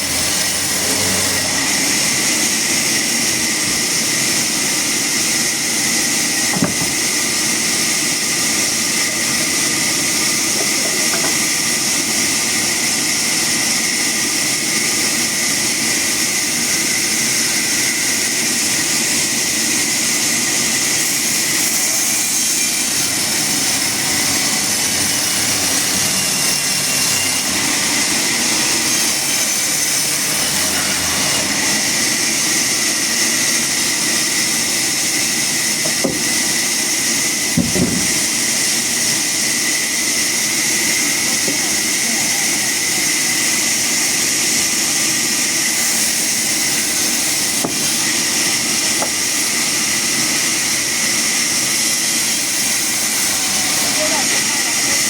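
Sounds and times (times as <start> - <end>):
machine motor humming: 0.0 - 4.4, 23.0 - 33.2, 52.6 - 55.0.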